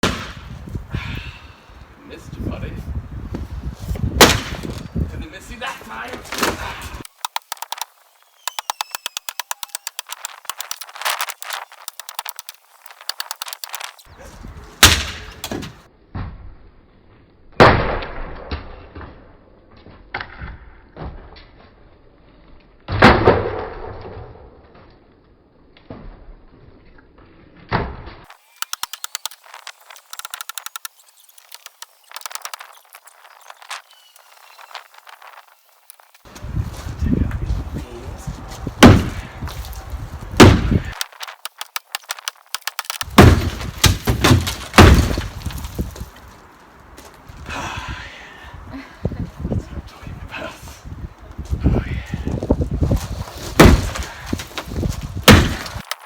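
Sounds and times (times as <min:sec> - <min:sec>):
sledgehammer striking wooden shed: 0:00.0 - 0:00.6, 0:04.0 - 0:05.0, 0:14.8 - 0:16.5, 0:22.9 - 0:23.8, 0:38.8 - 0:46.2, 0:53.2 - 0:56.0
timber rattling: 0:04.2 - 0:14.1, 0:28.3 - 0:36.6, 0:38.8 - 0:46.5, 0:53.2 - 0:56.0
small clicks and crackles: 0:07.0 - 0:14.1, 0:28.3 - 0:36.3, 0:40.9 - 0:43.2, 0:55.8 - 0:56.0.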